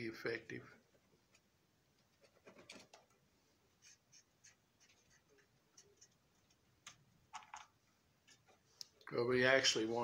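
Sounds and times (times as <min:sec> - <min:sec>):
paintbrush scratchy strokes: 0:03.7 - 0:06.2.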